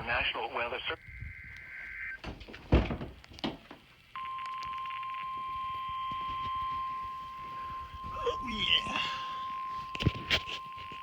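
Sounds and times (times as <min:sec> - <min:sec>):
two-pitched data burst: 0:04.2 - 0:11.0.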